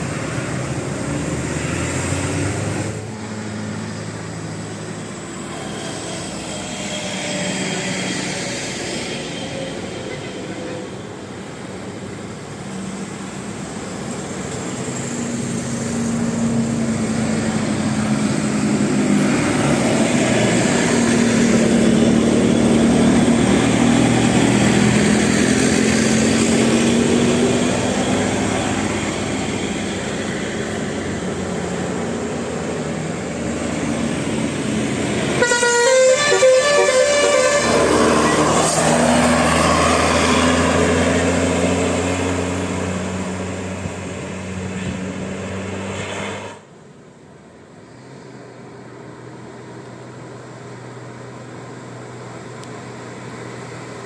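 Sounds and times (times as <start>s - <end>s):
bus passing by: 0.0s - 54.0s
musical multi-tone air horn: 35.4s - 38.9s.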